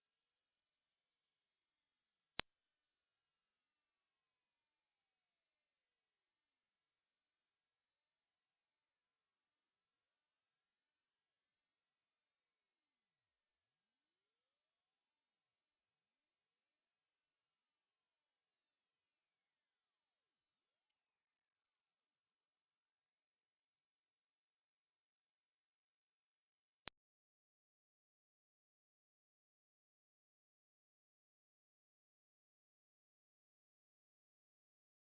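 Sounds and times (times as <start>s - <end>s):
rising sine tone sweep: 0.0s - 21.0s.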